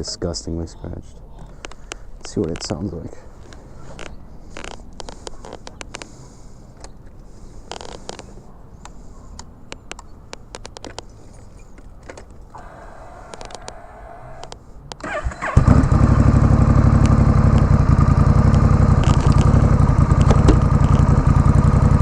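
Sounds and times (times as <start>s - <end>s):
motorcycle starter cranking: 12.5s - 22.0s
loud motorcycle engine idling: 15.0s - 22.0s.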